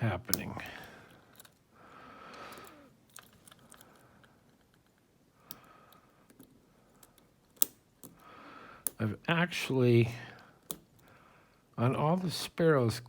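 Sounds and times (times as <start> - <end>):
soft handling rustle: 0.0 - 8.2
lock pick clicks and scrapes: 0.3 - 1.6, 2.3 - 8.2.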